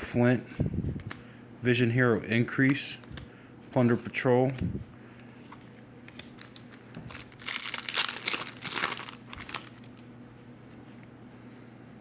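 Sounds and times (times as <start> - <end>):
foil wrapper tearing and crinkling: 5.6 - 10.1.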